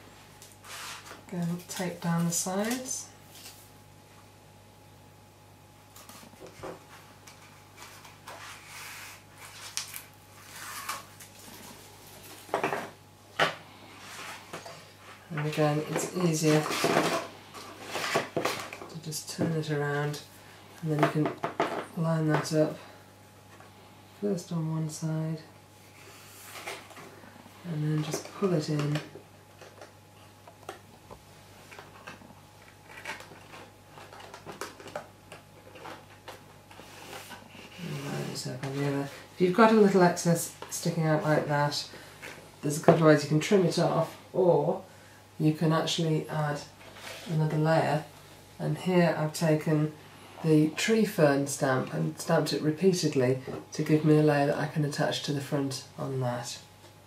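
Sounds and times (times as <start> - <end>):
paper and tape rustling: 0.4 - 3.6, 5.9 - 12.8, 31.7 - 37.9.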